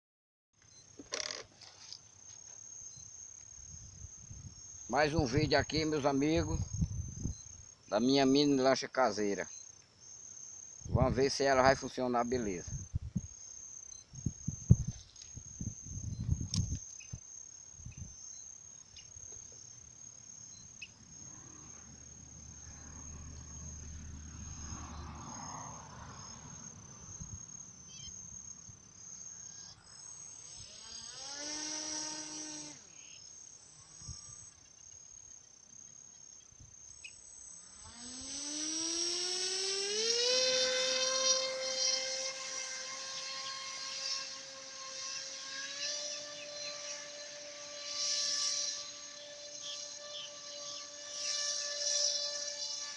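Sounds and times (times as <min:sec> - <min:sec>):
small motor whining: 0:00.6 - 0:07.8, 0:29.0 - 0:52.9
crickets chirping: 0:00.6 - 0:52.9.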